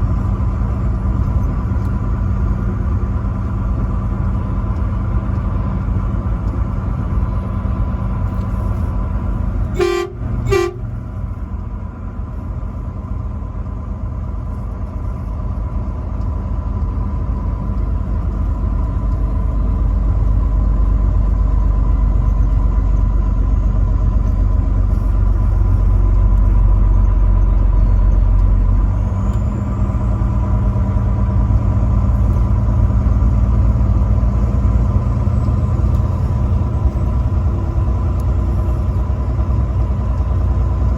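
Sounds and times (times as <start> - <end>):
truck engine and road drone: 0.0 - 40.9
truck horn toots: 9.6 - 11.0.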